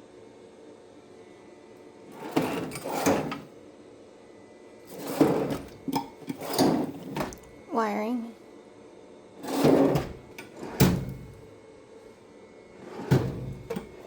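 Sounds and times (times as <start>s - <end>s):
metal drawers sliding: 2.1s - 3.5s, 4.9s - 7.5s, 9.4s - 11.5s, 12.8s - 14.0s.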